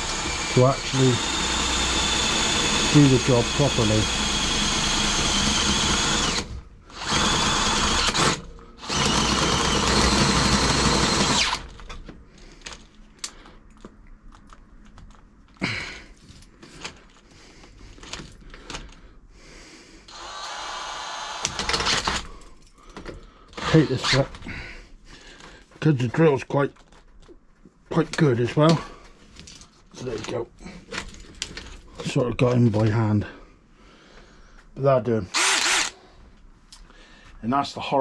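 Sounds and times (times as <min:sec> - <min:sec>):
electric drill boring metal: 0:00.0 - 0:11.7, 0:20.1 - 0:22.2, 0:35.3 - 0:36.0.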